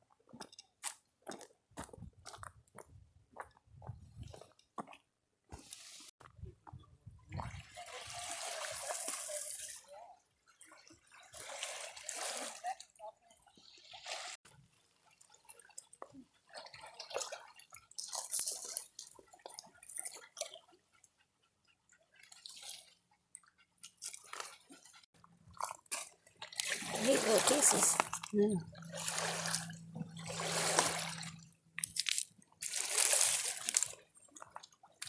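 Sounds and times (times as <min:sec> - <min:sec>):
water splashing and dripping: 0:07.2 - 0:09.9, 0:10.5 - 0:12.9, 0:13.5 - 0:20.8, 0:22.1 - 0:35.0.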